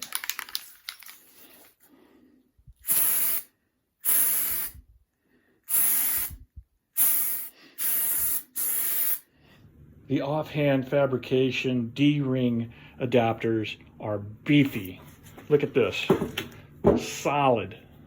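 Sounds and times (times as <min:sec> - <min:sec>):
aerosol can spraying: 0:02.8 - 0:04.8, 0:05.7 - 0:06.4, 0:07.0 - 0:09.2.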